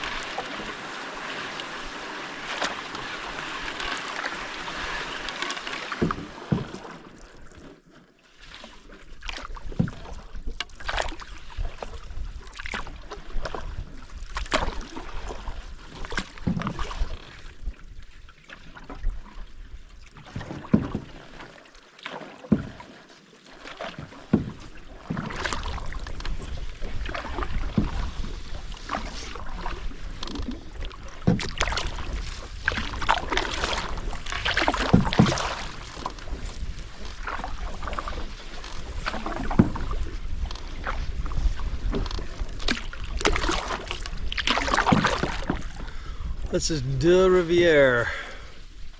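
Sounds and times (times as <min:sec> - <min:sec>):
paddle strokes and splashes: 0:00.0 - 0:48.9
knocks on canoe: 0:05.9 - 0:06.9, 0:20.4 - 0:21.2, 0:22.5 - 0:22.8, 0:23.9 - 0:28.1, 0:30.3 - 0:38.2.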